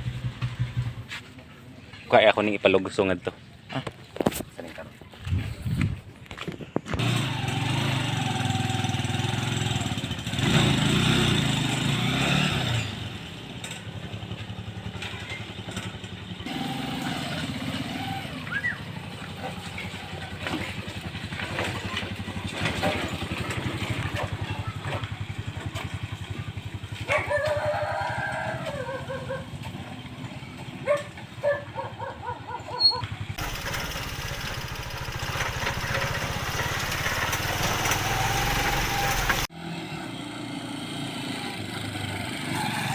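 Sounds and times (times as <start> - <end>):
small motorcycle engine running: 6.9 - 12.4, 13.1 - 27.0, 33.1 - 39.5.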